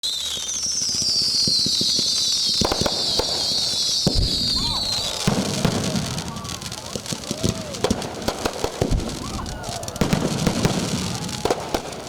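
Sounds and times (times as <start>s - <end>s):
fireworks sharp bangs: 0.0s - 12.0s
fireworks sizzle falling in pitch: 0.0s - 12.0s.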